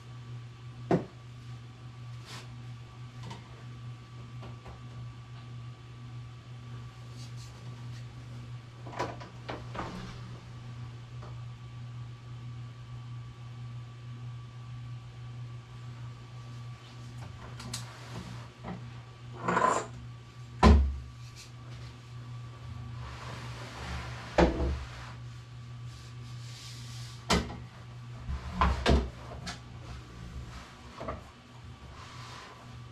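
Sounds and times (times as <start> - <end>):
steady low hum: 0.0 - 32.9
furniture sliding and scraping: 9.5 - 11.2, 17.9 - 18.5, 23.0 - 25.2, 28.2 - 32.9.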